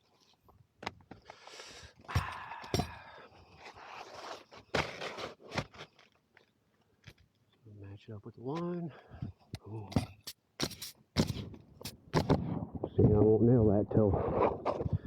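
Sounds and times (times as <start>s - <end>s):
shingles scraping on roof: 3.8s - 6.0s
sharp knocks: 9.9s - 12.6s.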